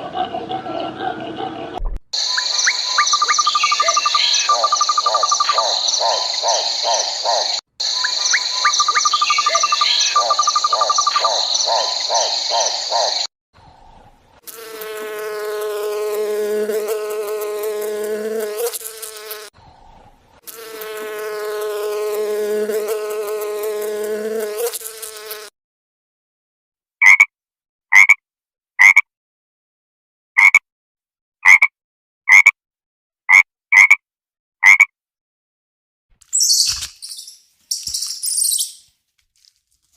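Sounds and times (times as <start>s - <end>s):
insects chirring: 2.2s - 13.3s, 36.3s - 38.9s
pulsed insect trills: 2.2s - 13.3s.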